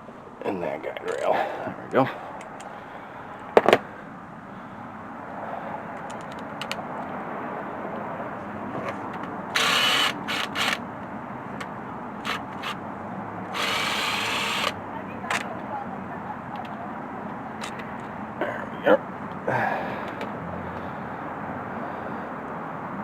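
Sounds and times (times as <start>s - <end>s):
steady background noise: 0.0s - 23.0s
tools and parts handling: 3.5s - 3.8s, 5.9s - 7.1s.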